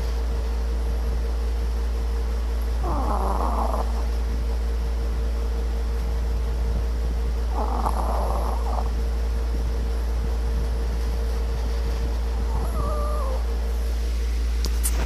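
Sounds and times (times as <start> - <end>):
low hum: 0.0 - 15.0
rasping snores: 2.8 - 4.0, 7.5 - 8.9.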